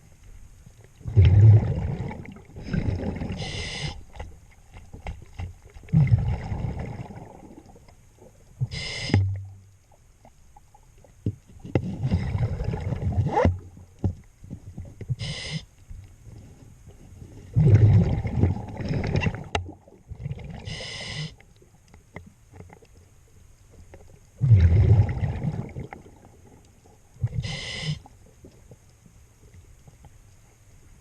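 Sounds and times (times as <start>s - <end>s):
exhaled bubbles rumbling underwater: 0.9s - 22.9s, 23.6s - 28.9s
regulator rasping on inhale: 3.4s - 4.1s, 8.7s - 9.2s, 15.2s - 15.7s, 20.7s - 21.4s, 27.3s - 28.1s.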